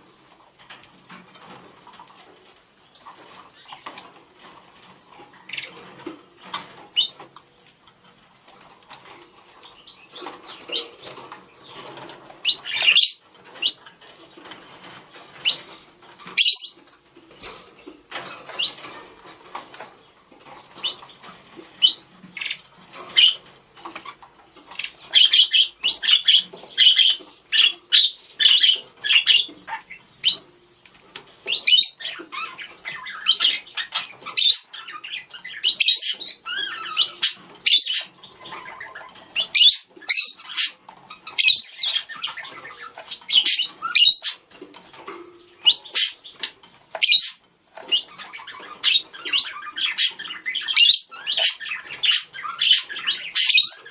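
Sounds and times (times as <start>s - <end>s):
budgerigars chirping: 6.9s - 7.4s, 9.6s - 17.0s, 18.5s - 19.0s, 20.8s - 30.6s, 31.4s - 44.5s, 45.4s - 53.9s.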